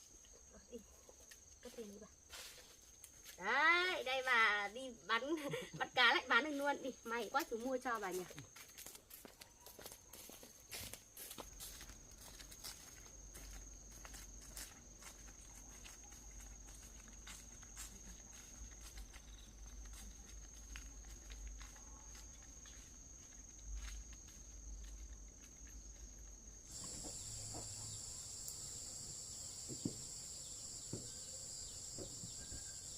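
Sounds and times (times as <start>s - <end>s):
high insect trill: 0.0s - 32.9s
dense high insect buzz: 21.6s - 32.9s.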